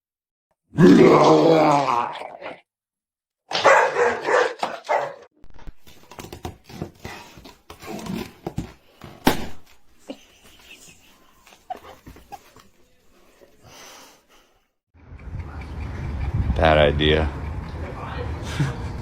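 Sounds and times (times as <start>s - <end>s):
dog barking: 3.5s - 5.3s.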